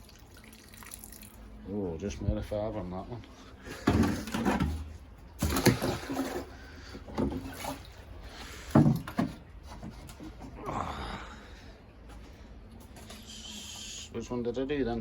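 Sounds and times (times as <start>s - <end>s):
water pouring and sloshing: 0.0s - 1.7s, 3.6s - 10.6s
container clunks: 3.7s - 7.8s.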